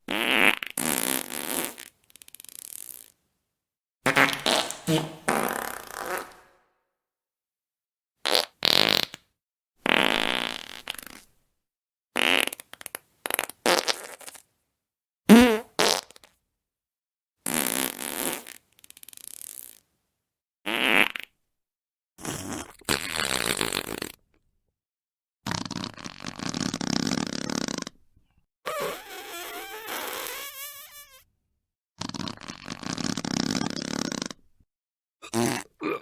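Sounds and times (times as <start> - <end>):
fart sound effects: 4.1 - 6.6, 15.3 - 16.1, 28.7 - 31.2.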